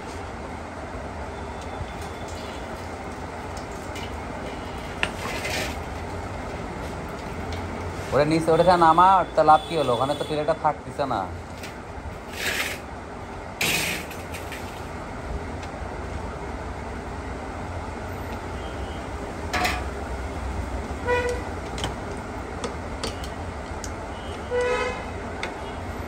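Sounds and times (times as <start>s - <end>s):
street traffic rumble: 0.0s - 26.0s
vehicle horn toot: 21.0s - 21.5s, 24.1s - 25.8s.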